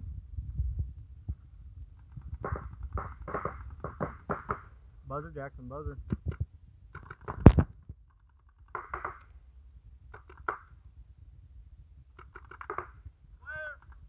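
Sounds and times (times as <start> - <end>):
faint clicks and pops: 1.3 - 4.6, 6.0 - 9.4, 10.1 - 10.8, 12.1 - 13.1.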